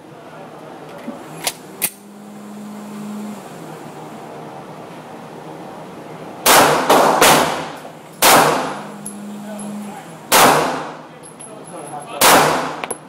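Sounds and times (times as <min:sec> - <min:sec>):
pistol shots with echo: 0:06.4 - 0:08.8, 0:10.3 - 0:11.0, 0:12.2 - 0:12.9.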